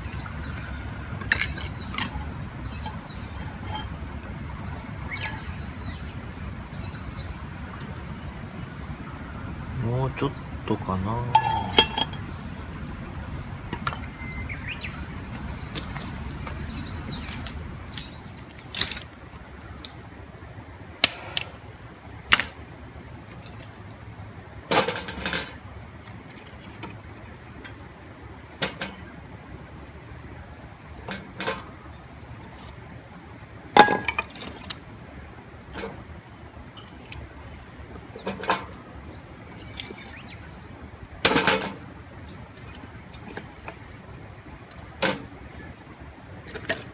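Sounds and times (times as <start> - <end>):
bird chirping: 0.0 - 18.8
wood campfire crackling: 1.4 - 12.6, 15.8 - 22.6
fire popping: 1.8 - 12.6, 20.6 - 22.2.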